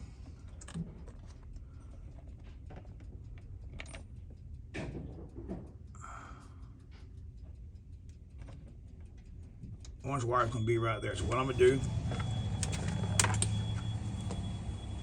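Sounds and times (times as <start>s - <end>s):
clicks and rustling of wiring: 11.3s - 14.5s.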